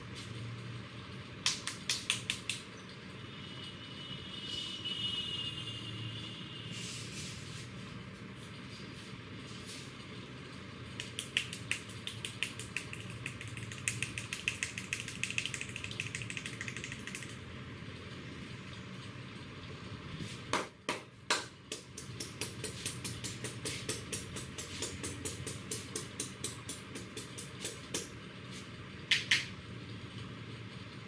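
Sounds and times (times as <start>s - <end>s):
sharp hand slaps: 1.4s - 2.6s, 11.0s - 17.0s, 29.1s - 29.5s
hand tapping on a head: 11.0s - 17.3s.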